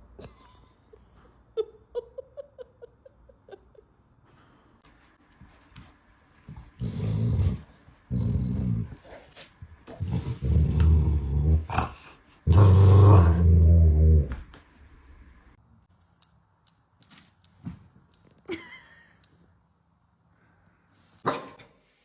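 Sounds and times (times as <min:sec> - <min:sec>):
dog growling: 0:06.7 - 0:09.1, 0:09.9 - 0:14.3.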